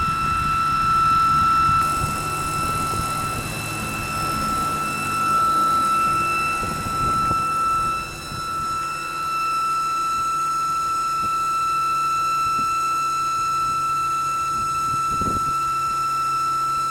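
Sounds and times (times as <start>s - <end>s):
high-pitched engine whine: 0.0s - 16.9s
car engine idling: 1.8s - 8.2s.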